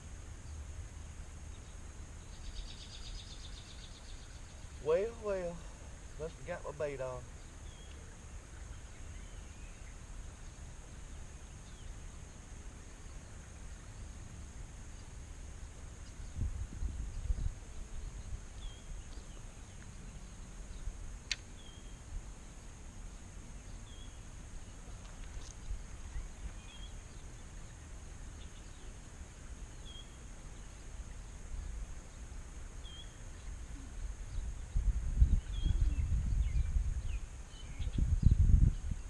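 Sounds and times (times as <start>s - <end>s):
steady high hiss: 0.0s - 39.0s
bird chirping: 1.4s - 29.0s, 32.8s - 39.0s
wind on microphone: 16.1s - 19.1s, 33.6s - 39.0s
sharp click: 21.3s - 21.5s.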